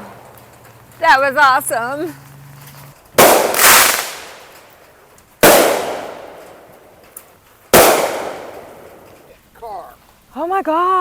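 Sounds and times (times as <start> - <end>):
fireworks bangs: 3.1 - 9.3.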